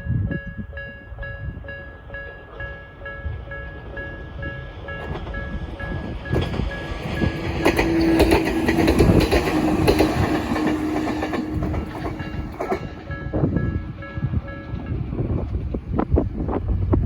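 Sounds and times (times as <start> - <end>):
crossing warning bell dinging: 0.0 - 16.1
train wheels clattering over rail joints: 4.5 - 13.6.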